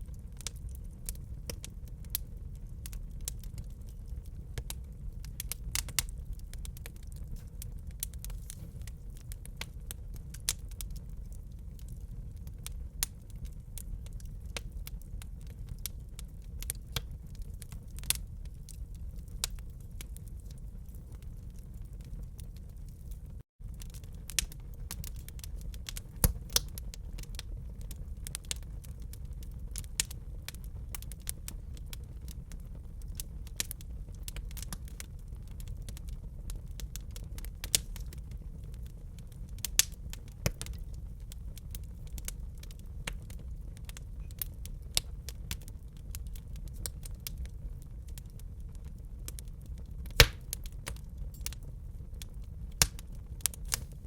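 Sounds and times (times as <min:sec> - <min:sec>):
wood fire crackling: 0:00.0 - 0:54.0.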